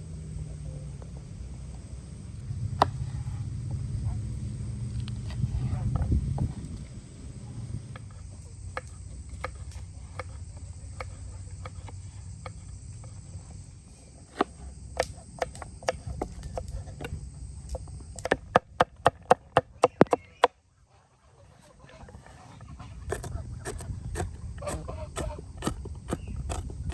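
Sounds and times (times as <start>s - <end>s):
knife chopping on cutting board: 23.1s - 26.9s.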